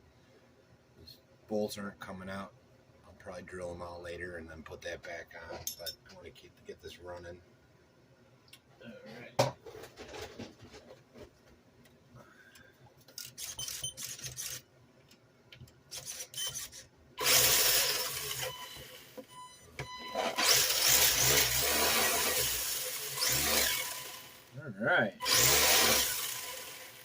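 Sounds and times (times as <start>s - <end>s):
rc car motor running: 15.9s - 19.2s, 20.3s - 24.5s, 25.2s - 27.0s.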